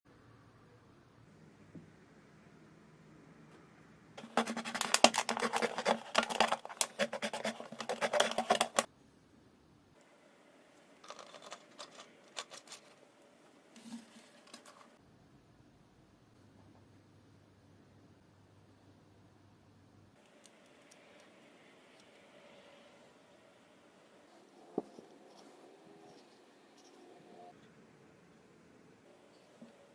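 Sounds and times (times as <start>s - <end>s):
plastic parts clicking and rattling: 4.2s - 8.9s, 11.0s - 13.0s.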